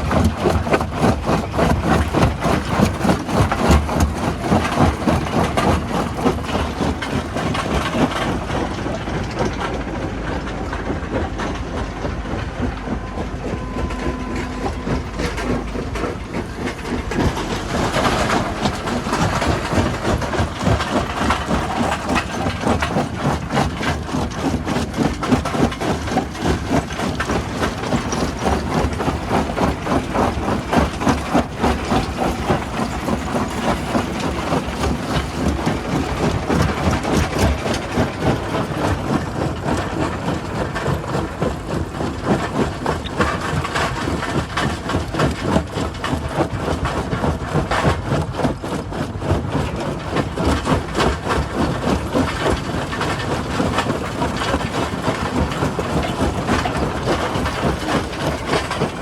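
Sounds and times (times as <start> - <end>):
machinery clattering: 0.0 - 59.0
low engine hum: 3.3 - 23.5.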